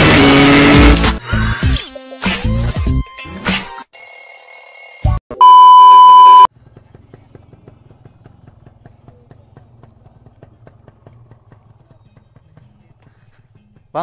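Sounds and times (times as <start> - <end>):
loud electronic beep: 5.0 - 6.5.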